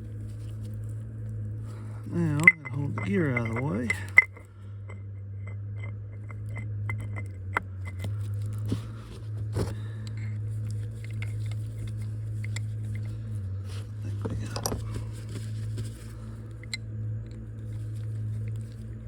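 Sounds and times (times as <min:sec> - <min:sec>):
steady low hum: 0:00.0 - 0:19.0
metal tools clinking and scraping: 0:02.0 - 0:16.0.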